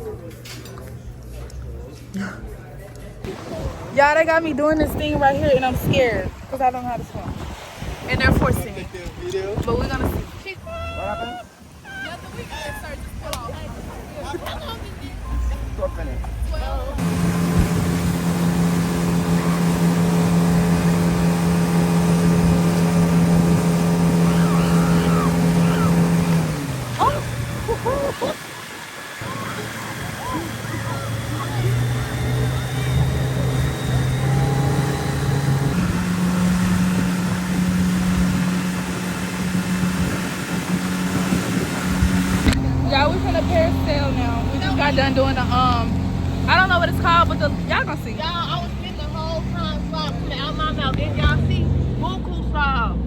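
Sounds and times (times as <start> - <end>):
watercraft engine humming: 0.0 - 53.0
rushing wind: 3.3 - 13.2, 17.0 - 43.2
water noise: 3.3 - 50.4.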